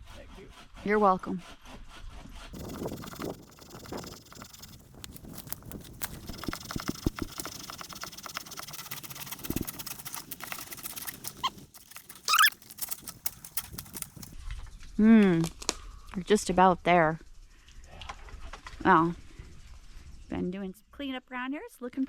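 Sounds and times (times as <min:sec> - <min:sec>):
branch dragged over twigs and leaves: 0:02.6 - 0:14.4.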